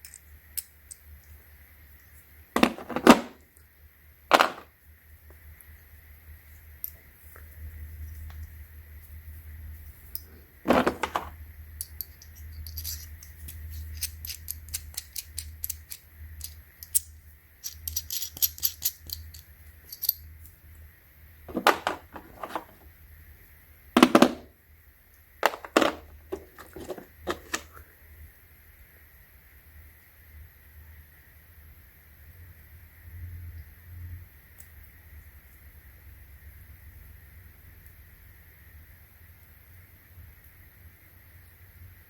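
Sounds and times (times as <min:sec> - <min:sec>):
metal tools clunking: 0:02.6 - 0:03.4, 0:04.3 - 0:04.6, 0:10.7 - 0:11.4, 0:21.5 - 0:22.8, 0:24.0 - 0:24.5, 0:25.4 - 0:27.7
metal tools clicking and rattling: 0:10.7 - 0:20.3, 0:21.5 - 0:22.8, 0:25.4 - 0:27.7.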